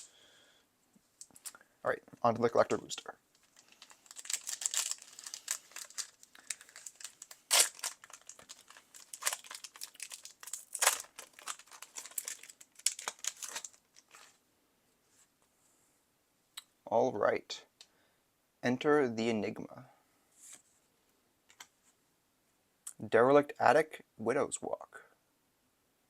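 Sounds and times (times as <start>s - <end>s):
foil wrapper tearing and crinkling: 3.4s - 14.4s.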